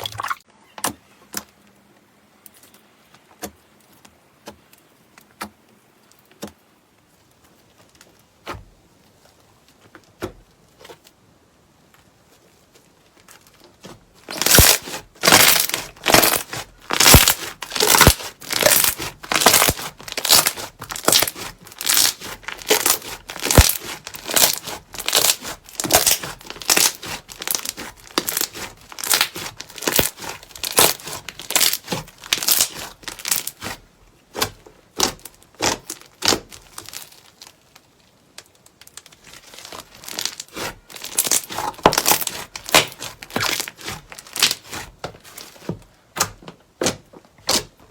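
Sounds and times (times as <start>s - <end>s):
crunchy slime crackling: 14.2s - 45.7s.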